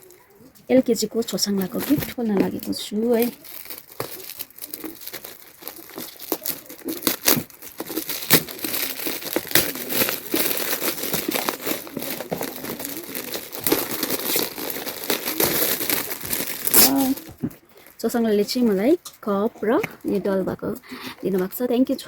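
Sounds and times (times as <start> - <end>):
wrapping paper crinkling: 0.0 - 19.0
paper ripping: 1.5 - 17.5.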